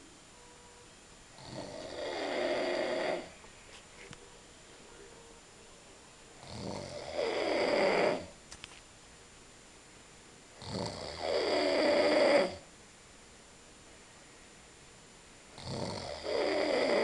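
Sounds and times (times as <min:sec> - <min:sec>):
man snoring loudly: 0:01.3 - 0:03.3, 0:06.4 - 0:08.3, 0:10.6 - 0:12.7, 0:15.6 - 0:17.0.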